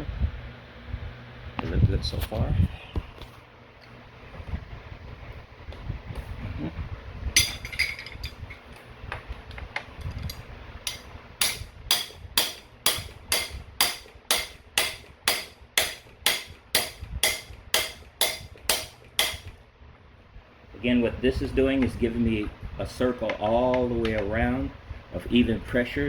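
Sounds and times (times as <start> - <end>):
hammer striking metal tool: 10.9 - 19.6.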